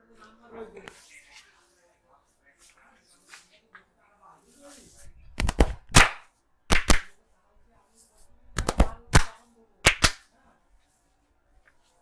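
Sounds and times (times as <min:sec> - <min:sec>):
hand slaps on skin: 0:05.4 - 0:07.1, 0:08.6 - 0:10.2.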